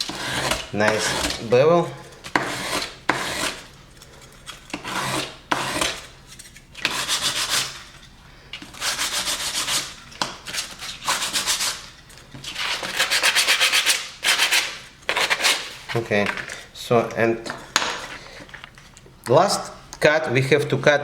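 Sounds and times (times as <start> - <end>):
hand file rasping: 0.0 - 1.5, 2.3 - 3.6, 4.7 - 6.0, 6.8 - 7.8, 8.8 - 9.9, 12.6 - 15.7.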